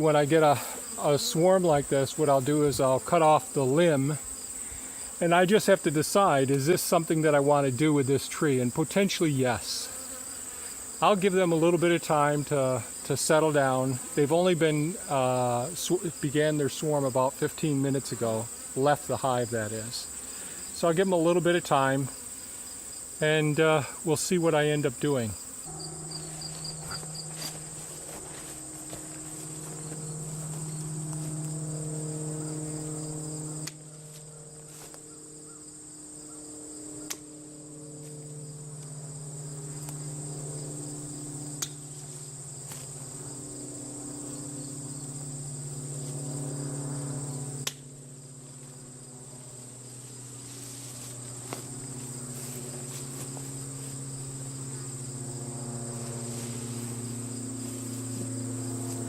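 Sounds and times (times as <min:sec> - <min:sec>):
bees buzzing: 0:00.0 - 0:59.0
high-pitched insect trill: 0:00.1 - 0:59.0.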